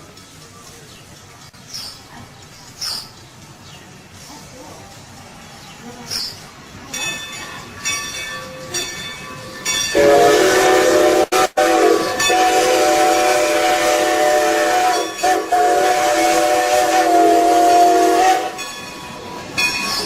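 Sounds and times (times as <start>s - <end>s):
noisy hiss: 0.0s - 20.0s
train air horn chord: 9.9s - 18.6s.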